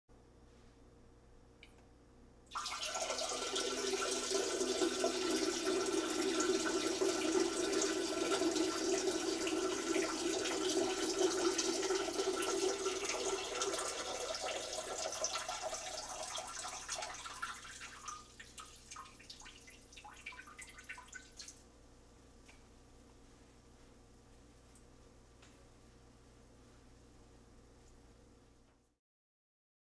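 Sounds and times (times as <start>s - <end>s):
dribbles and drips: 12.4s - 21.6s.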